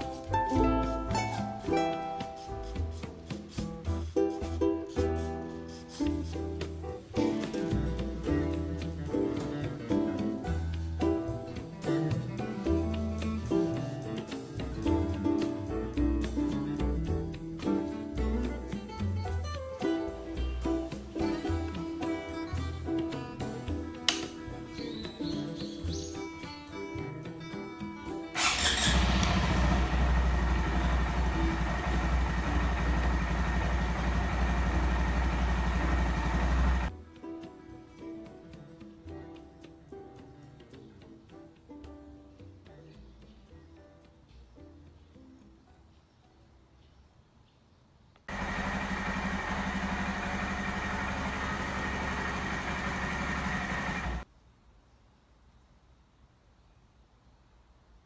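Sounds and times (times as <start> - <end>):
motorcycle engine idling: 28.4 - 36.9, 48.3 - 54.2.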